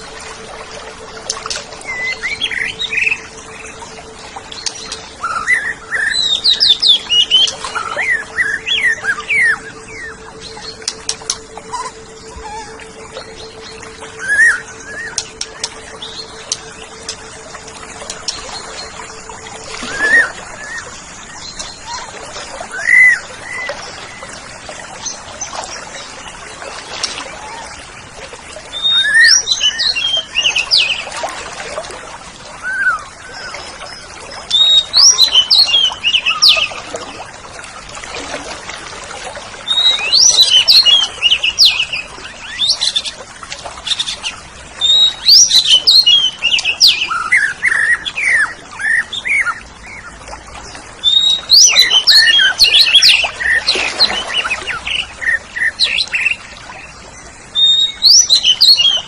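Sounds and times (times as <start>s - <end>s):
bird singing whistled phrases: 1.4s - 3.8s, 4.7s - 17.2s, 28.8s - 31.0s, 32.6s - 33.5s, 44.8s - 49.6s, 51.0s - 56.4s, 57.6s - 59.0s.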